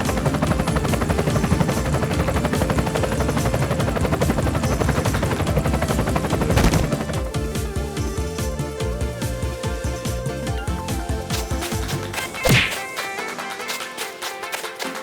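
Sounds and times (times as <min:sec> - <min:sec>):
toy helicopter rotor chopping: 0:00.0 - 0:07.7
background music: 0:00.0 - 0:15.0.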